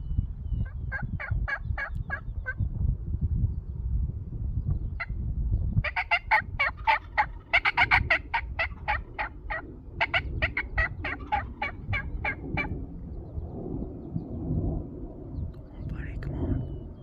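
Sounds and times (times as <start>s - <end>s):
turkey yelping: 5.8s - 12.8s.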